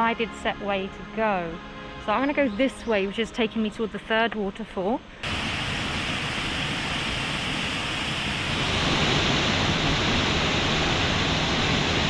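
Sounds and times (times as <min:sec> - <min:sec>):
waterfall rushing: 0:05.2 - 0:12.0.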